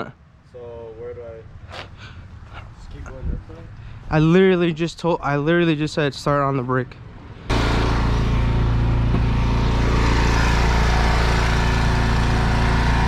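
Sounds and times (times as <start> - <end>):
pressure washer engine droning: 7.5 - 13.0.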